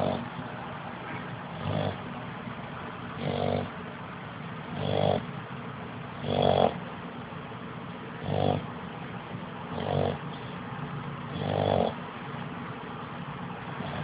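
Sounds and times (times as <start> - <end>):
dog snoring: 0.0 - 0.3, 1.5 - 2.0, 3.2 - 3.7, 4.6 - 5.3, 6.2 - 6.9, 8.2 - 8.7, 9.7 - 10.6, 11.2 - 12.0, 13.8 - 14.0.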